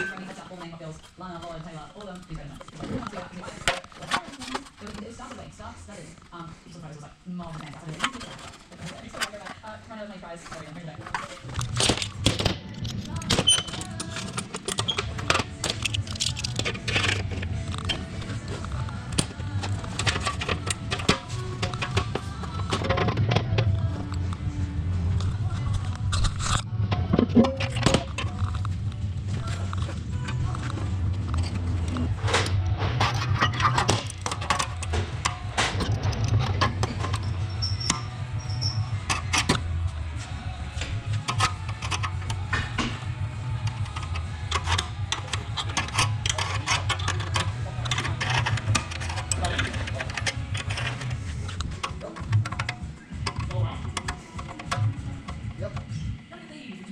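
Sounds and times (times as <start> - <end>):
metal tools clinking: 0.0 - 5.3
background music with low beat: 8.4 - 56.9
sharp clicks and knocks: 40.8 - 55.9.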